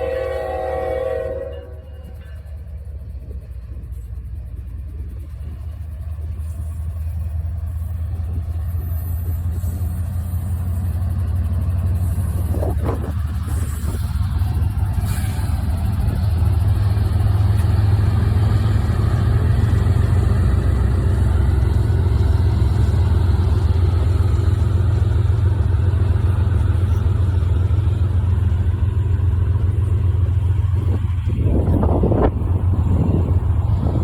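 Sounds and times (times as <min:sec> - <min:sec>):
wind buffeting microphone: 0:12.3 - 0:15.0, 0:28.5 - 0:34.0.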